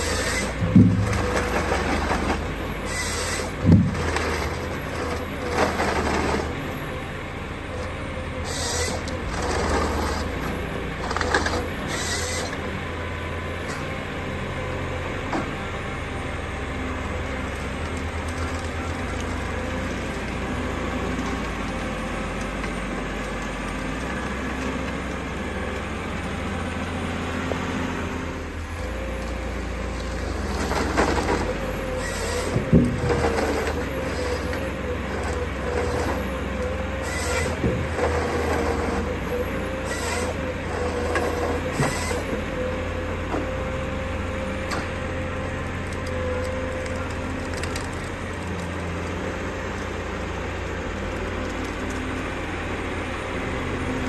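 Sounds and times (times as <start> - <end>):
machinery engine drone: 0.0 - 54.0
wood knocks and crunches: 0.2 - 6.7, 28.8 - 36.3.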